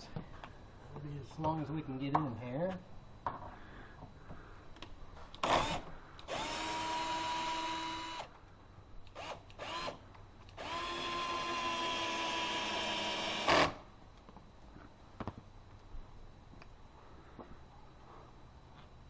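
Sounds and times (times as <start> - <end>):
cordless drill driving screws: 5.4 - 8.3, 9.1 - 10.0, 10.6 - 13.8.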